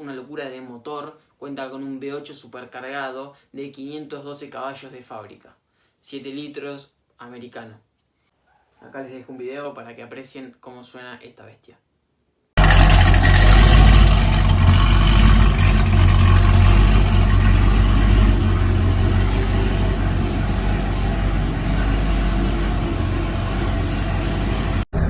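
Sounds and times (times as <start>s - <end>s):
deep loud car engine: 12.6s - 25.0s.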